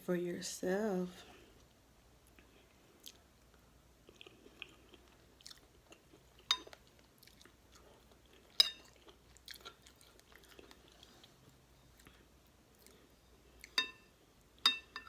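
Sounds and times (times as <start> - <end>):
person chewing: 1.6 - 14.6
utensil clinking on dish: 8.6 - 9.0, 13.7 - 15.0.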